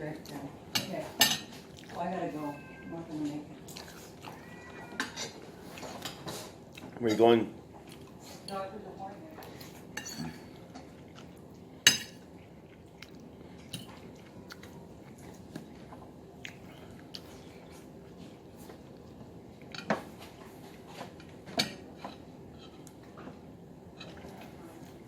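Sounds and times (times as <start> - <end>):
dishes and cutlery clinking: 0.7 - 1.7, 4.3 - 7.4, 9.4 - 10.6, 11.8 - 12.2, 19.7 - 23.4.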